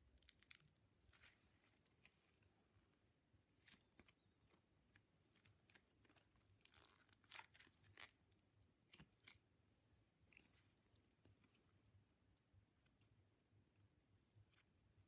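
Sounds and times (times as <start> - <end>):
sticky slime crackling and popping: 0.1 - 1.3, 5.3 - 8.2.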